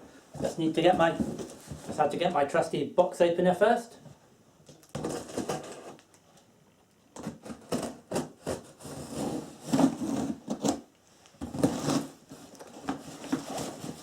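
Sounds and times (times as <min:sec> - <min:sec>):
cardboard scraping and tearing: 0:05.0 - 0:06.0, 0:07.3 - 0:10.8, 0:11.4 - 0:14.0
box cutter cutting cardboard: 0:07.2 - 0:10.8, 0:11.4 - 0:14.0.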